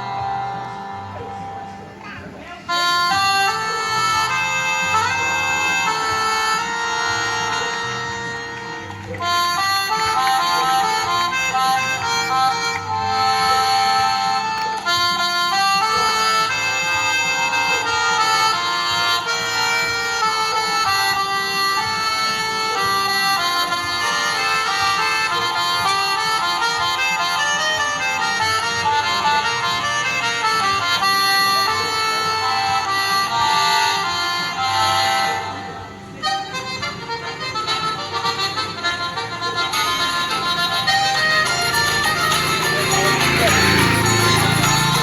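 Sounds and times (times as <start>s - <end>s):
music with reedy lead melody: 0.0s - 45.0s.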